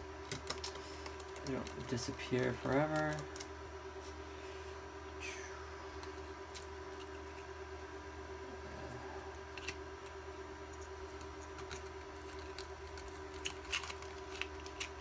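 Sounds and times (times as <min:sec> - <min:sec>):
steady electrical hum: 0:00.0 - 0:15.0.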